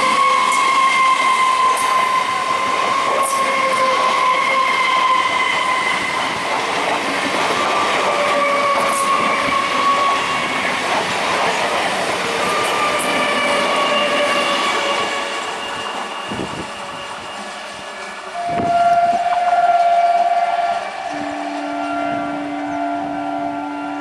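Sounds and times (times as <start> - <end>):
train wheels on rails: 0.0 - 24.0.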